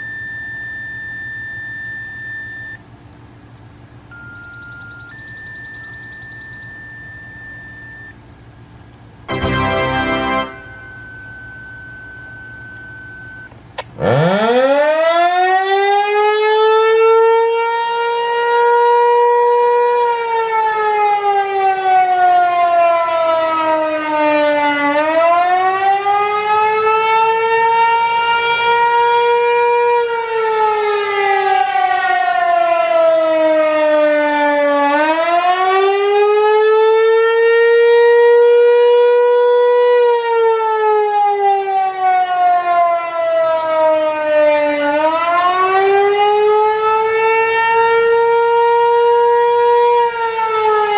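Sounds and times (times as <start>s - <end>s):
warning siren wailing: 0.0s - 2.9s, 4.1s - 8.3s, 9.3s - 50.9s.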